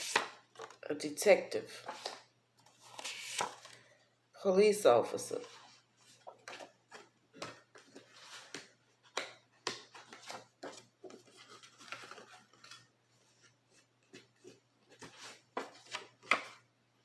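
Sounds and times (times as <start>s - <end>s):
cards being handled on a table: 1.8s - 3.8s, 5.4s - 16.6s.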